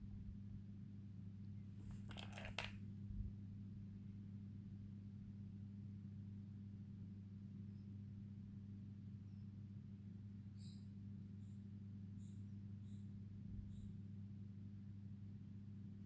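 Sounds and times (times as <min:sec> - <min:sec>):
crisp clicks and rustling: 0:01.8 - 0:02.8
steady low hum: 0:02.8 - 0:16.0.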